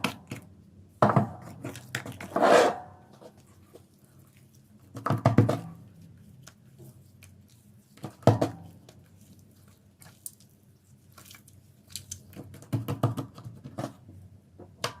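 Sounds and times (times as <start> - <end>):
soap being crushed: 4.9 - 13.8.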